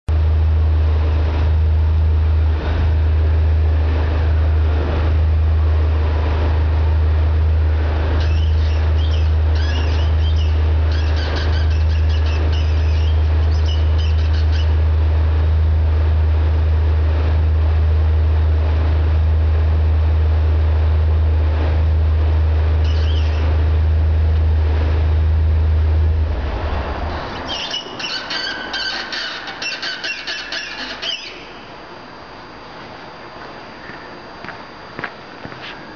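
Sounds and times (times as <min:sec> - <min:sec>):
steady low hum: 0:00.1 - 0:35.9.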